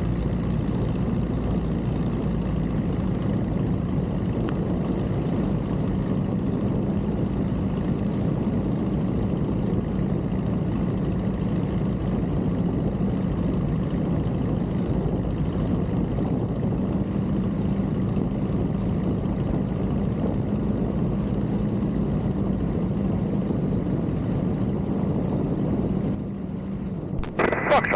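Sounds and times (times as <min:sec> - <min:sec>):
propeller plane engine droning: 0:00.0 - 0:27.9.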